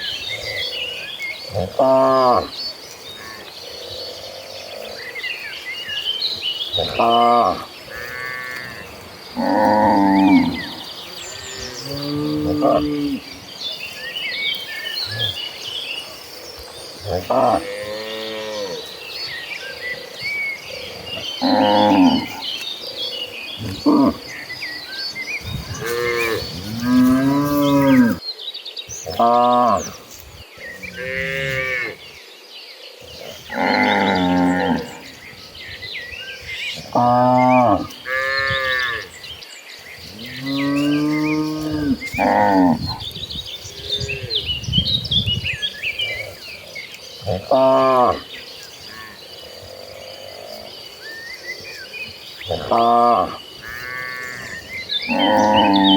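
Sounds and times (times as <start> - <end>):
birds chirping: 0.0 - 55.9
cows mooing: 6.8 - 13.4, 17.0 - 18.9, 20.7 - 22.6, 23.6 - 24.5, 25.5 - 28.2, 33.3 - 35.1, 40.1 - 43.0, 47.3 - 48.3, 52.5 - 55.9
cattle mooing: 21.0 - 22.4, 25.7 - 28.2, 52.5 - 55.9.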